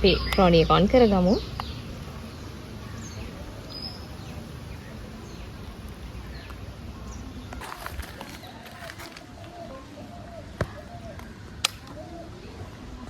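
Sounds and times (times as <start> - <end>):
outdoor background noise: 0.0 - 13.0.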